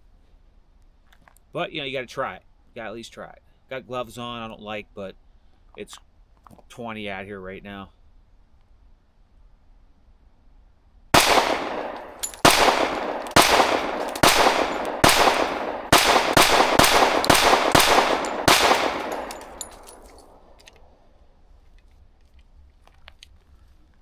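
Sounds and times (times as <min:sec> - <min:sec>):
pistol shots: 0:11.2 - 0:20.8.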